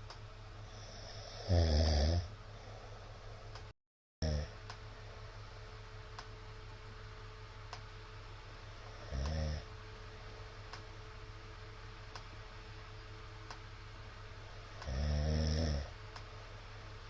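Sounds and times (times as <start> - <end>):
steady low hum: 0.0 - 17.0
man snoring: 0.7 - 2.3, 4.2 - 4.6, 8.9 - 9.7, 14.8 - 15.9.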